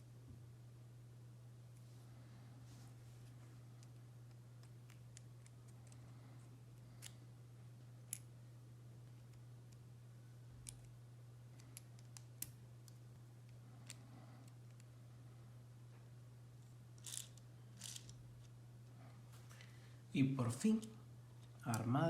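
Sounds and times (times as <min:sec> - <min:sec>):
faint low hum: 0:00.0 - 0:22.0
plastic pieces clicking together: 0:17.0 - 0:18.1.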